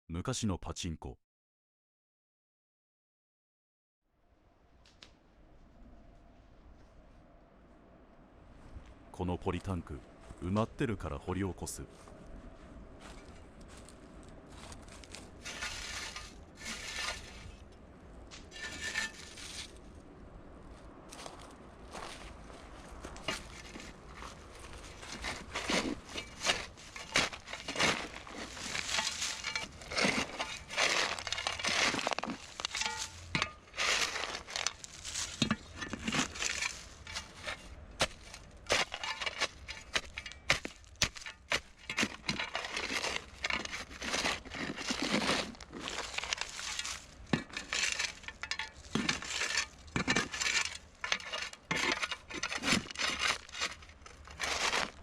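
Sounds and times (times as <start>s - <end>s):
shovel crunching into soil: 14.5s - 17.6s, 18.3s - 19.8s, 23.1s - 55.0s.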